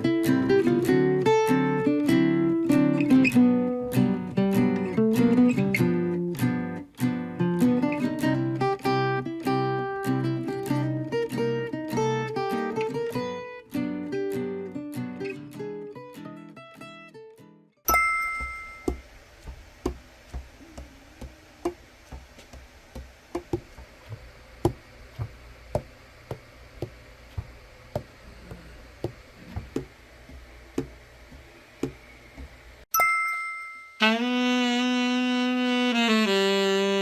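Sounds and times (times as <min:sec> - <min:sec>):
two-tone chime: 0:17.9 - 0:19.1, 0:32.9 - 0:34.2
light irregular taps: 0:18.4 - 0:32.7
tenor saxophone low notes: 0:34.0 - 0:37.0.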